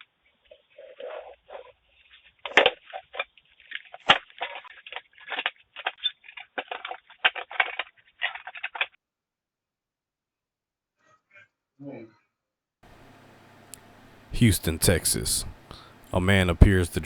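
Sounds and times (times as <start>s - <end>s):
crackling and rustling: 0.3s - 9.0s.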